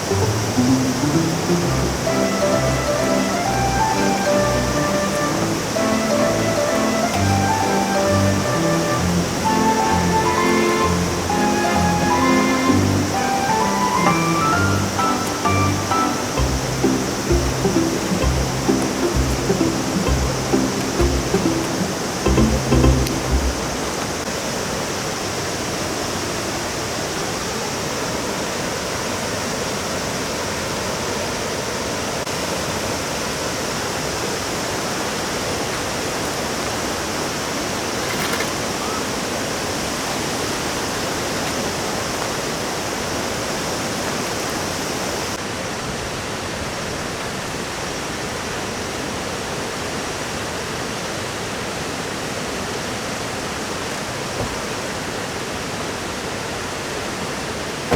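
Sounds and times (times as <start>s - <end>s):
stream rushing over rocks: 0.0s - 57.9s.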